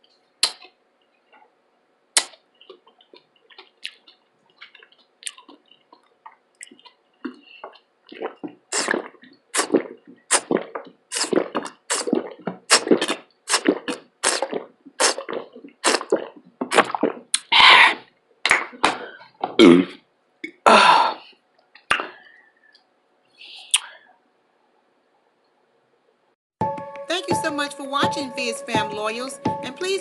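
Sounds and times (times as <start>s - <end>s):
mouth or throat sounds: 0.4s - 0.7s, 6.6s - 22.3s
wet chewing and lip smacking: 0.4s - 1.5s, 2.2s - 17.6s.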